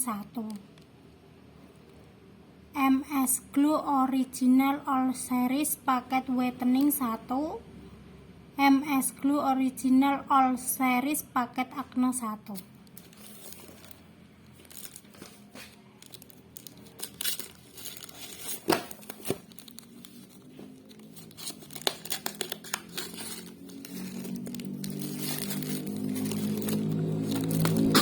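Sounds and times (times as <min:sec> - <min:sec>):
packaging tearing and crumpling: 0:12.8 - 0:28.0.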